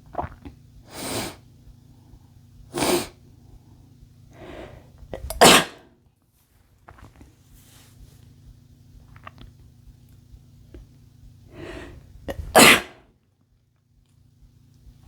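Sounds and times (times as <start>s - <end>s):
man sneezing: 5.4s - 5.8s, 12.4s - 13.0s.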